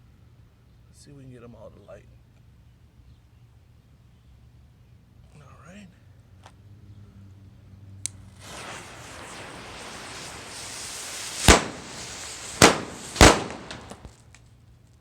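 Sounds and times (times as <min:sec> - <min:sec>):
small pops: 0:08.0 - 0:14.4
firecracker fuses hissing: 0:08.1 - 0:14.4
loud firecracker bangs: 0:08.4 - 0:14.2.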